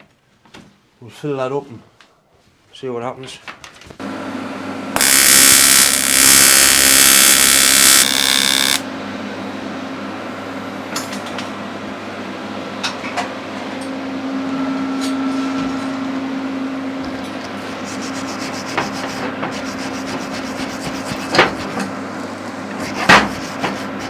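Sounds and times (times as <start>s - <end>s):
die grinder grinding metal: 5.0s - 8.8s, 22.8s - 24.0s
grinder humming: 5.0s - 8.9s, 17.6s - 21.8s, 22.8s - 24.0s.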